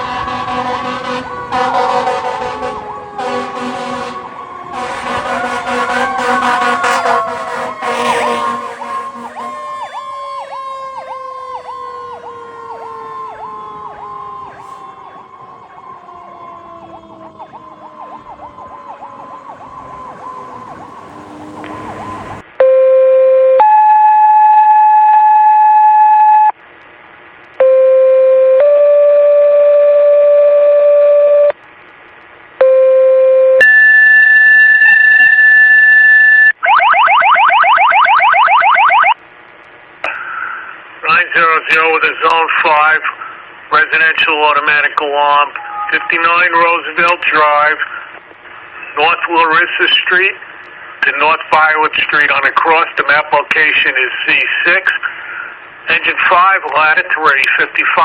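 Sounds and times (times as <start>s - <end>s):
fire engine siren winding down: 0.0s - 26.5s, 27.6s - 31.6s, 32.7s - 39.2s, 45.3s - 47.8s
pulsing siren tone: 0.0s - 26.5s, 27.6s - 31.5s, 32.8s - 39.2s, 45.6s - 46.3s
dispatch alert tones from scanner: 45.6s - 46.4s.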